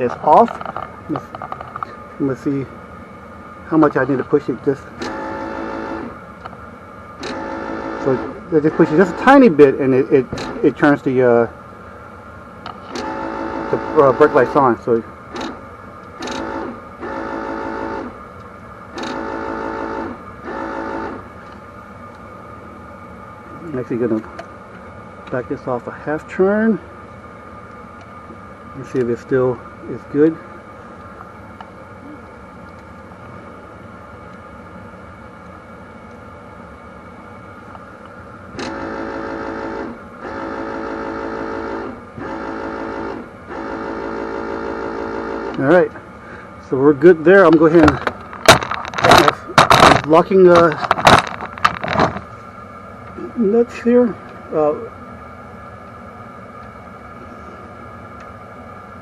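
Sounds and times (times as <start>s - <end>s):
electric buzzer tone: 5.0s - 6.2s, 7.2s - 9.4s, 13.0s - 14.6s, 16.2s - 18.1s, 19.0s - 21.2s, 38.6s - 45.6s.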